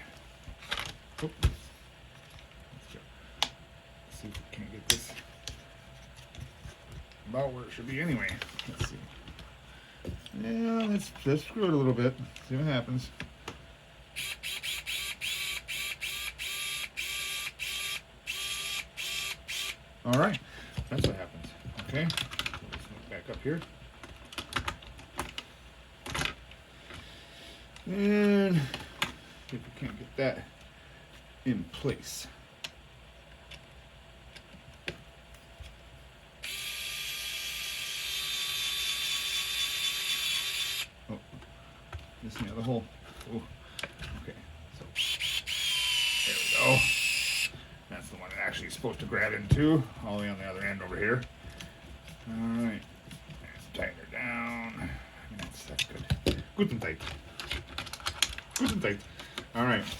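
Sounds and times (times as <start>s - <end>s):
electric screwdriver whirring: 14.2s - 19.8s, 36.4s - 40.9s, 45.0s - 47.5s.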